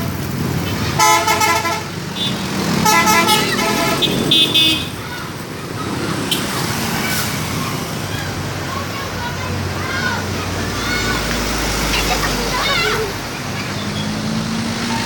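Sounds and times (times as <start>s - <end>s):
multi-tone musical vehicle horns: 0.7s - 5.1s.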